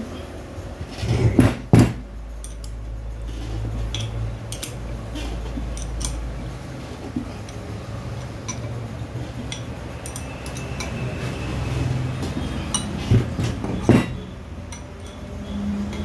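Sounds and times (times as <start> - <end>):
loud knocks: 1.1 - 2.1
hand tools clinking on metal: 3.8 - 6.3, 7.3 - 8.8, 9.4 - 11.4, 12.2 - 16.0.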